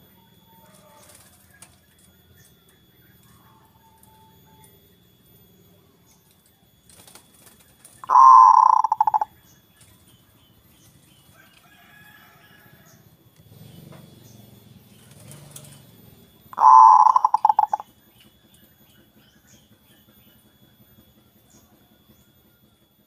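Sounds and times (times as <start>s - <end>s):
dove cooing with stuttering trill: 6.7s - 10.2s, 12.8s - 22.2s.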